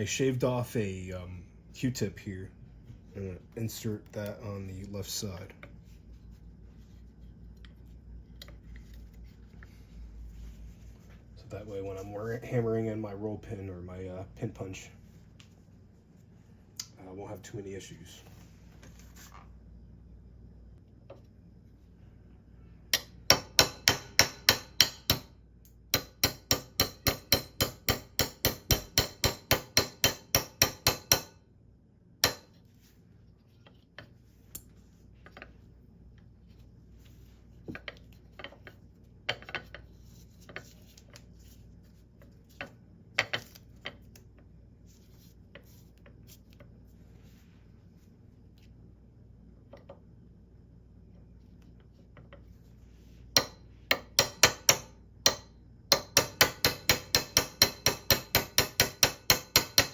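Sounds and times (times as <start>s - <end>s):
hammer tapping metal punch: 22.9s - 25.3s, 25.9s - 31.4s, 32.2s - 32.5s, 53.4s - 59.9s.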